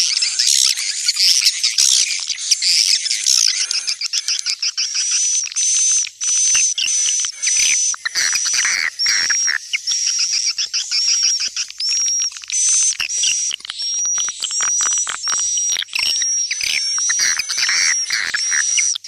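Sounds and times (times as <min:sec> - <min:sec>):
high-pitched bird twittering: 0:00.0 - 0:19.0.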